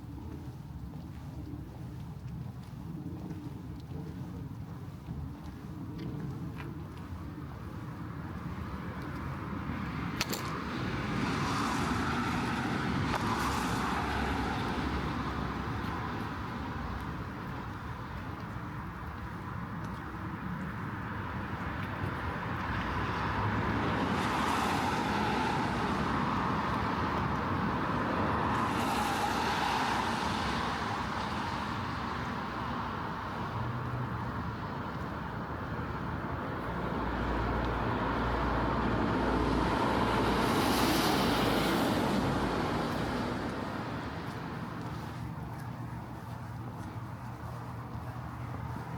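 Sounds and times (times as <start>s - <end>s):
engine rumble: 0.0s - 48.9s
tyres hissing on wet road: 11.2s - 15.6s, 24.1s - 32.5s, 38.1s - 44.6s.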